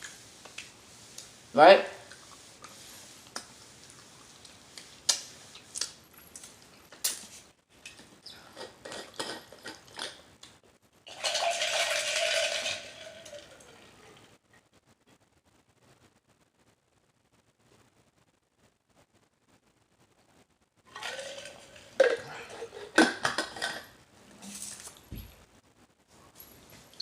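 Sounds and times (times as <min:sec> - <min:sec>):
utensils clattering: 0:08.4 - 0:10.2, 0:21.0 - 0:24.8.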